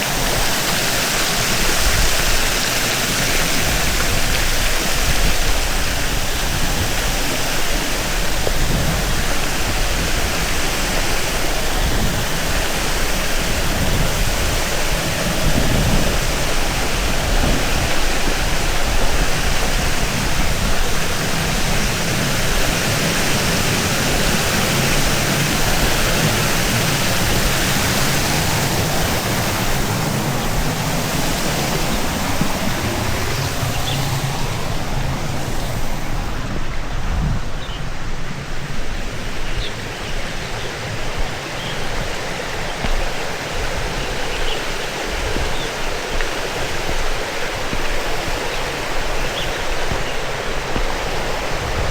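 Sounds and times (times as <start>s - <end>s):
stream water rushing: 0.0s - 51.9s.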